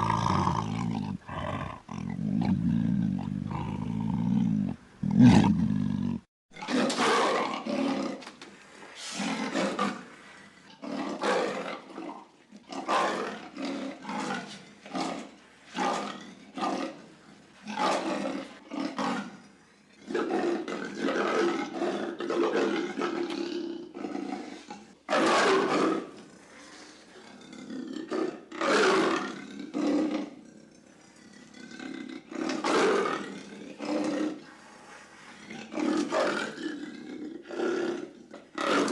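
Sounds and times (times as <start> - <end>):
dogs roaring: 0.0 - 8.2, 20.1 - 26.3, 32.0 - 34.5, 35.4 - 38.9.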